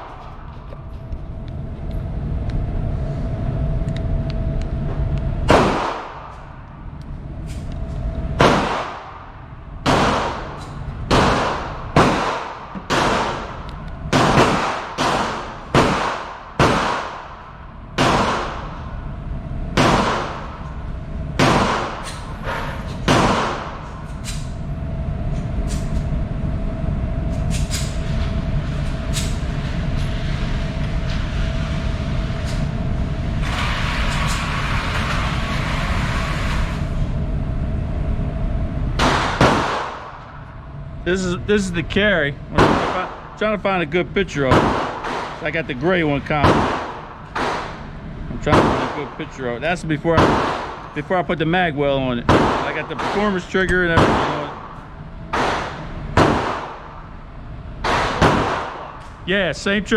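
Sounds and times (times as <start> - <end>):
steady hum: 0.0 - 59.9
gunshots ringing: 5.5 - 6.4, 8.4 - 9.2, 9.8 - 17.4, 18.0 - 18.8, 19.8 - 20.6, 21.4 - 22.1, 23.0 - 23.8, 39.0 - 40.2, 42.5 - 43.3, 44.2 - 51.0, 52.2 - 54.7, 55.3 - 57.0, 57.8 - 59.0.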